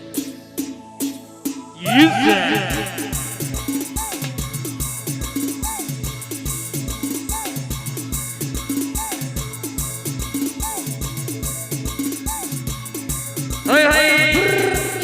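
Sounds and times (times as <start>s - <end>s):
repeating instrumental melody: 1.8s - 3.9s
steady drum beat: 1.8s - 4.1s.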